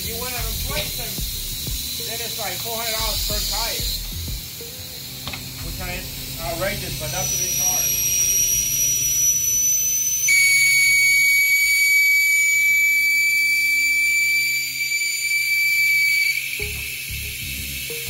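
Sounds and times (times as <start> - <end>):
low steady hum: 0.0 - 14.9
high-pitched whistling tone: 0.0 - 18.0.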